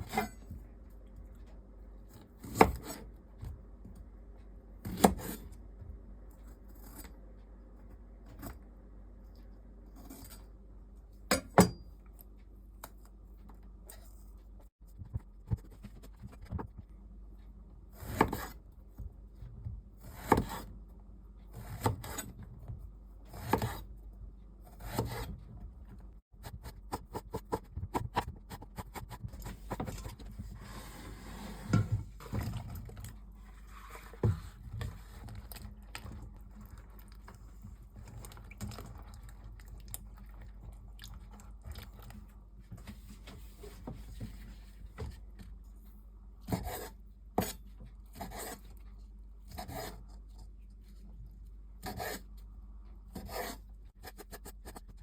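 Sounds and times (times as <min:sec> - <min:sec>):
knife knocks and scrapes on board: 0:02.4 - 0:03.0, 0:20.1 - 0:20.7, 0:46.5 - 0:47.6.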